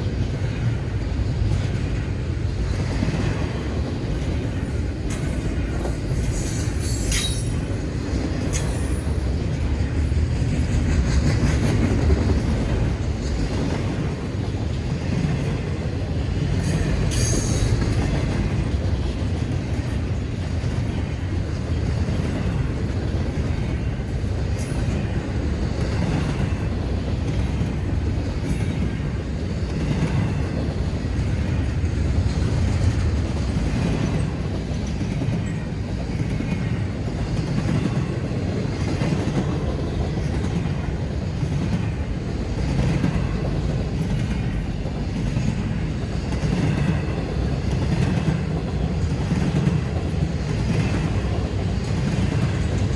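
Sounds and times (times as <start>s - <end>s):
freight train rumbling past: 0.0s - 52.9s
high wheel squeals: 5.4s - 7.6s, 17.1s - 17.8s.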